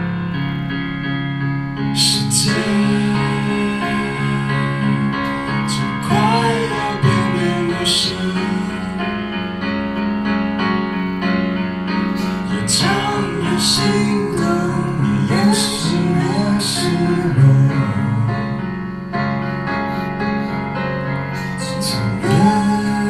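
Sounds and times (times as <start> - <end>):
sustained keyboard chords: 0.0 - 23.0
person singing: 2.0 - 9.5, 12.1 - 18.6, 21.3 - 23.0.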